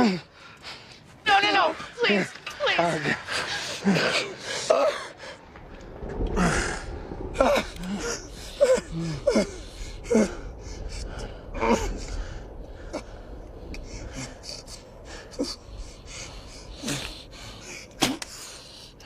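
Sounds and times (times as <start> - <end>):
ragged breathing: 3.2 - 19.0.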